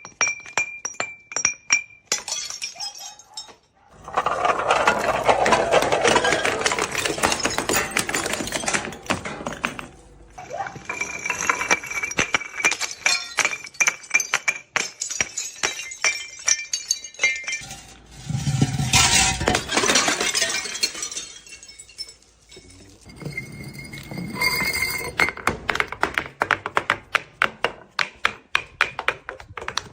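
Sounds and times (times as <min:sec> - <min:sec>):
glass bottles smashing: 0:00.0 - 0:25.9.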